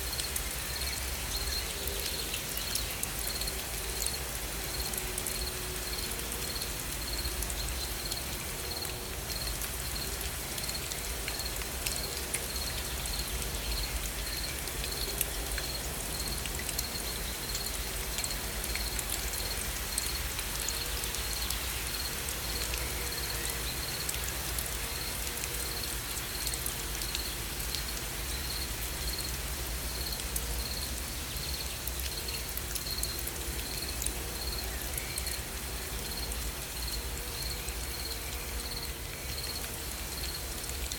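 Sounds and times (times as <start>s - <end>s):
gentle rain falling: 0.0s - 40.9s.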